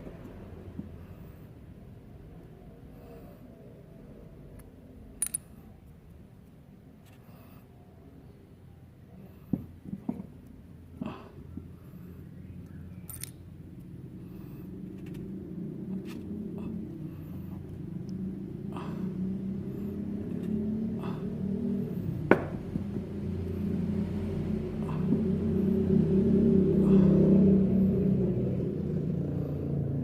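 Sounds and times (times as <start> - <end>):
low mechanical rumble: 0.0 - 30.0.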